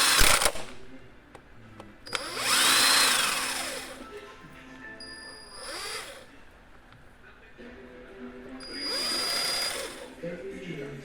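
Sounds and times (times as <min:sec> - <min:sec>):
power drill spinning: 0:00.0 - 0:00.6, 0:02.1 - 0:04.0, 0:05.4 - 0:06.3, 0:08.6 - 0:10.2.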